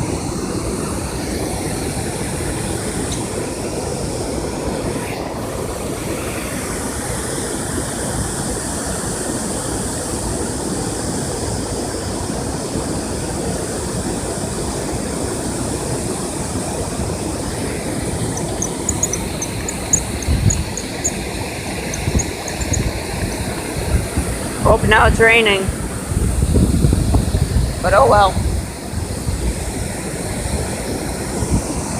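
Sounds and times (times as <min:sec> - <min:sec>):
water roaring through dam: 0:00.0 - 0:31.9
faint high chirps: 0:18.2 - 0:23.8
wind bumps on microphone: 0:18.4 - 0:29.7.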